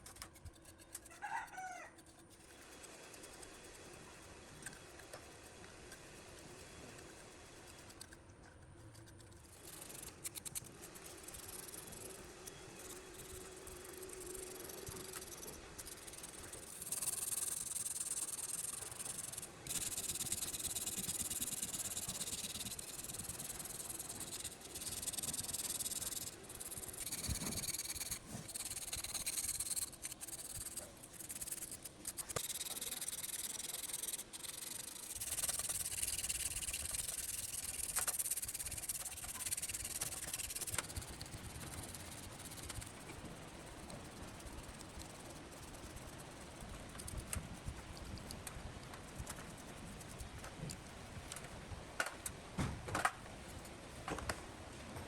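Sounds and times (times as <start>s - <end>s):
sanding a surface by hand: 9.4s - 47.8s.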